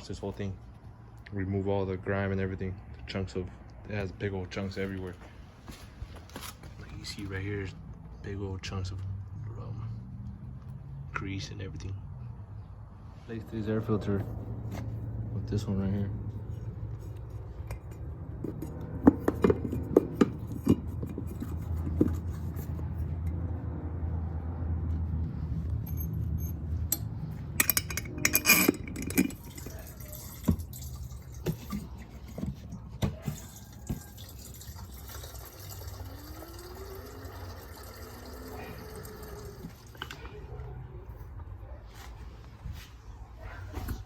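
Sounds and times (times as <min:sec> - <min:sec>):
liquid pouring into container: 0:29.3 - 0:32.4, 0:33.3 - 0:40.0.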